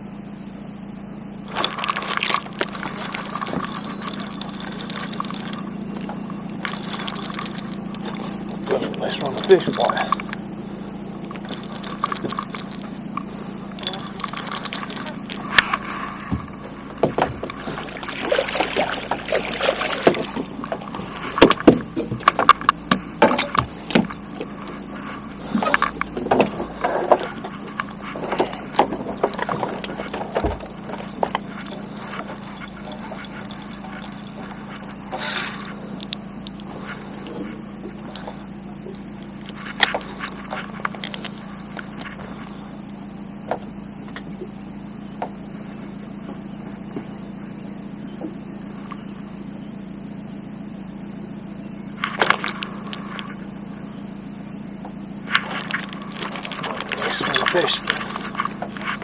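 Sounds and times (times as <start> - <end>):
low hum: 0.0 - 59.0
knocks and clatter on boat: 11.2 - 35.9.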